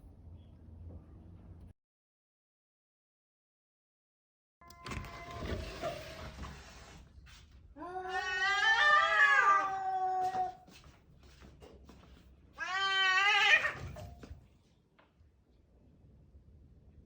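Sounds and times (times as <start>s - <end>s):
cat meowing: 7.8s - 10.6s, 12.6s - 14.0s.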